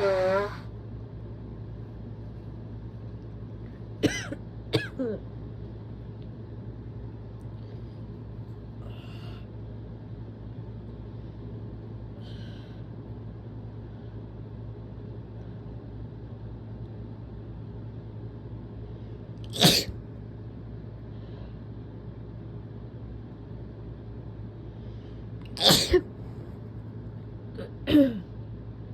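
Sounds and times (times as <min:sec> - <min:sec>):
faint breathy sounds: 0:07.5 - 0:09.7, 0:11.0 - 0:13.1, 0:21.0 - 0:21.9
person sneezing: 0:19.5 - 0:20.0, 0:25.5 - 0:26.1, 0:27.6 - 0:28.3.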